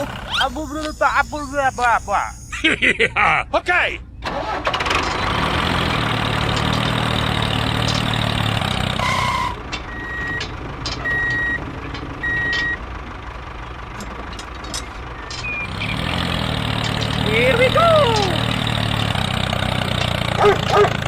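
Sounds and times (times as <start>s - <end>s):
reversing alarm beeps: 0.0s - 2.8s, 9.0s - 11.6s, 12.2s - 12.8s
vehicle engine running: 0.0s - 2.8s, 4.1s - 21.0s.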